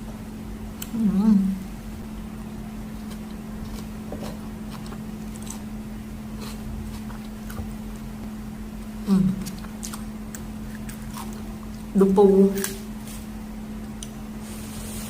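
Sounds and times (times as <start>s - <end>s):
steady low hum: 0.0s - 15.0s
person chewing: 2.8s - 8.2s, 8.8s - 11.9s.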